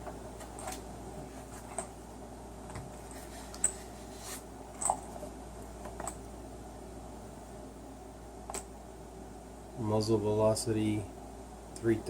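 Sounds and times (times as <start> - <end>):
low room hum: 0.0 - 12.0.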